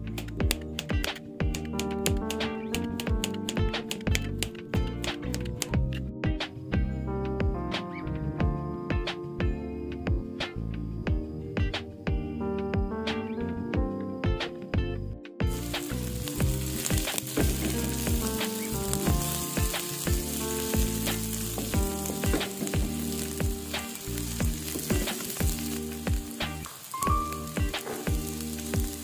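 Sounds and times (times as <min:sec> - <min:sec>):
background music with beat: 0:00.0 - 0:29.0
food sizzling in hot oil: 0:15.5 - 0:29.0.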